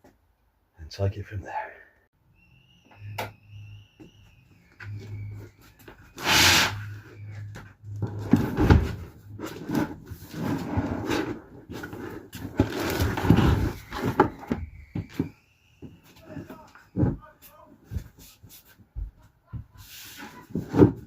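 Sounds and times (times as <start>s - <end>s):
lino scraping on van floor: 8.0s - 14.4s.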